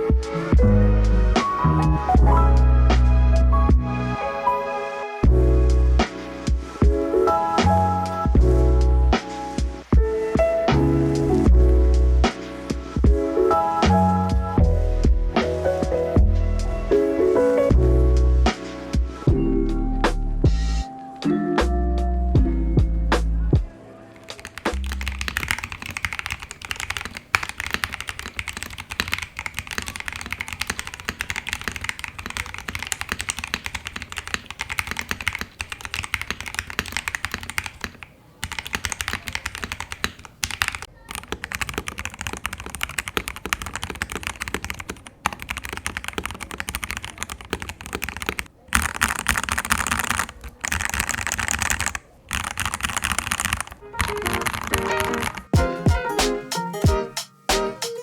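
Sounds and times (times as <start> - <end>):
mechanical keyboard typing: 24.2 - 55.6.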